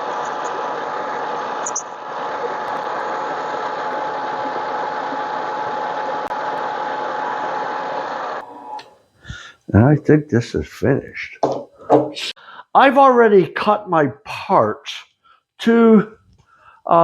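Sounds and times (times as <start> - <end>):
lathe whining: 0.0 - 9.2.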